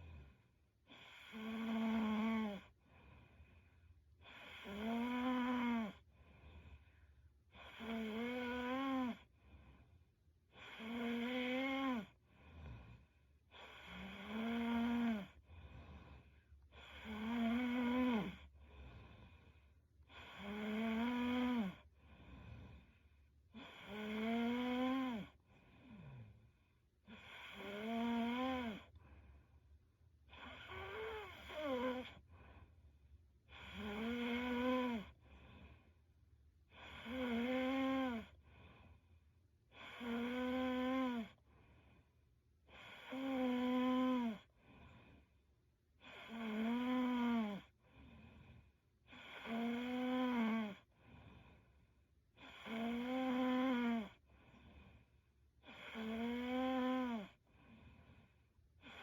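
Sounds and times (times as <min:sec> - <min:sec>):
faint breaths: 0:00.0 - 0:01.8, 0:02.6 - 0:04.8, 0:05.9 - 0:07.9, 0:09.1 - 0:10.9, 0:12.0 - 0:14.3, 0:14.9 - 0:20.6, 0:21.5 - 0:24.0, 0:25.0 - 0:37.2, 0:38.2 - 0:40.2, 0:41.0 - 0:43.4, 0:44.4 - 0:46.3, 0:47.0 - 0:49.5, 0:50.7 - 0:52.7, 0:54.0 - 0:56.0, 0:57.1 - 0:59.0
woman snoring: 0:00.0 - 0:02.8, 0:04.2 - 0:06.9, 0:07.5 - 0:09.3, 0:10.5 - 0:29.0, 0:30.3 - 0:32.6, 0:33.5 - 0:35.8, 0:36.7 - 0:38.8, 0:39.7 - 0:41.4, 0:42.7 - 0:45.2, 0:46.0 - 0:51.6, 0:52.3 - 0:59.0.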